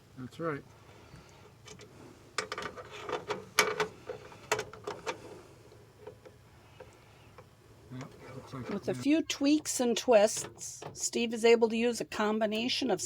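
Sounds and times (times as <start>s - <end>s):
small hardware clicking and knocking: 2.4s - 5.2s.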